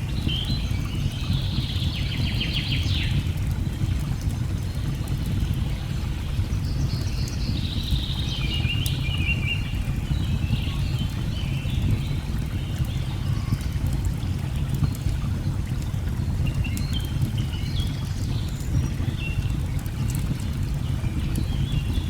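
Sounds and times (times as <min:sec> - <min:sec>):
faint crackles: 0:11.0 - 0:22.0.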